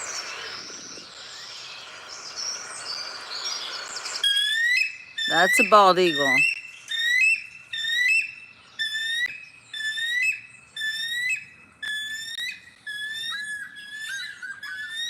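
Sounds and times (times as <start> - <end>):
eagle call: 4.7 - 8.2.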